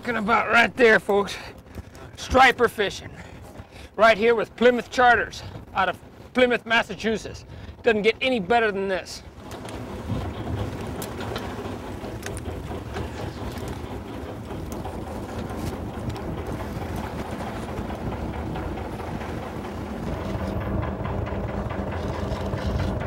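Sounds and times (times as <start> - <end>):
boat engine running: 0.0 - 23.0
water noise: 0.0 - 23.0
wind: 0.0 - 23.0
steady hum: 9.4 - 23.0.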